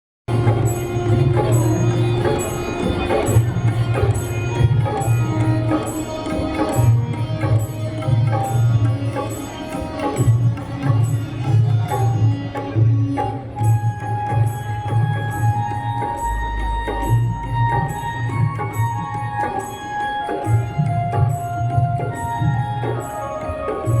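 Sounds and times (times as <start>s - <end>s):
sustained melodic notes: 0.3s - 24.0s.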